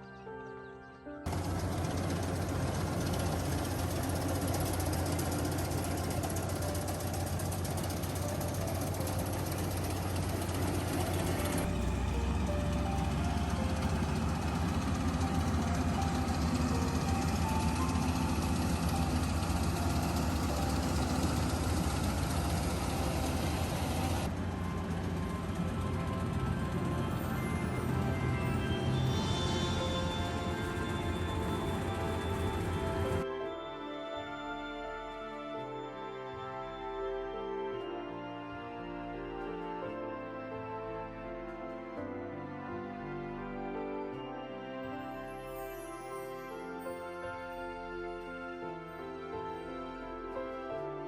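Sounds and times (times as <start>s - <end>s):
small engine running: 1.3s - 33.2s.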